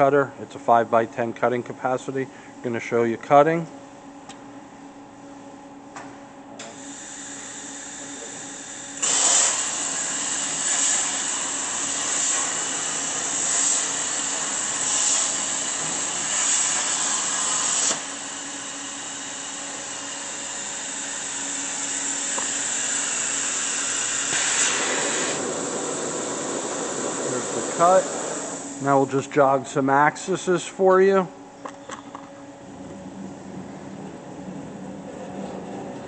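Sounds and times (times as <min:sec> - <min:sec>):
plasma torch cutting hiss: 0:06.7 - 0:28.9.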